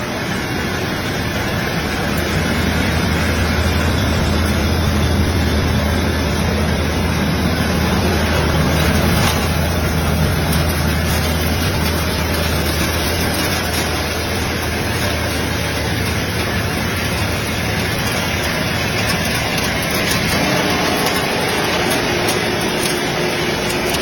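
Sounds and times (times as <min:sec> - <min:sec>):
rice milling machine drone: 0:00.0 - 0:24.0.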